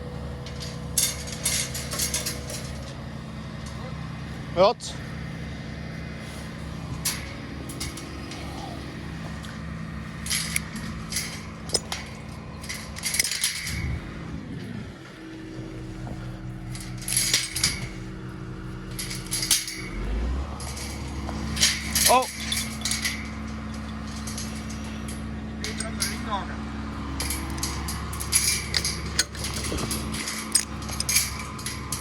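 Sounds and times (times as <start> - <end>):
excavator diesel engine running: 0.0 - 32.0
metal clanks and scrapes: 0.3 - 4.4, 5.9 - 26.4, 27.0 - 32.0.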